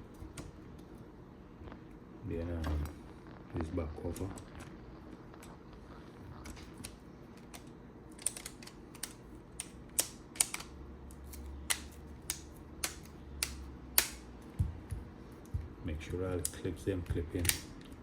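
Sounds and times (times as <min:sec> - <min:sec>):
plastic phone cover clips snapping: 0:06.8 - 0:14.2.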